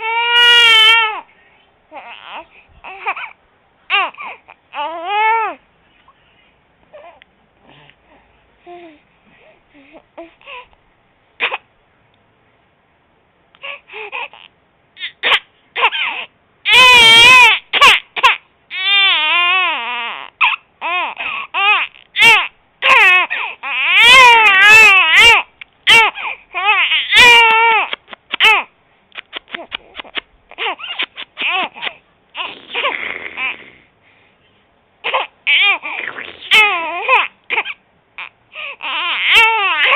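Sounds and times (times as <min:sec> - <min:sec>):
baby coughing cry and wail: 0:02.1 - 0:05.6, 0:11.4 - 0:11.7, 0:15.0 - 0:19.4, 0:20.4 - 0:28.7, 0:29.6 - 0:33.7, 0:35.0 - 0:39.9.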